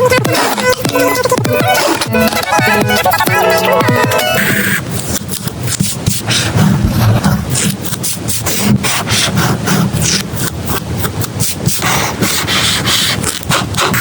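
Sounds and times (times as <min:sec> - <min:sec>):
paper rubbing and scraping: 0:04.9 - 0:14.0.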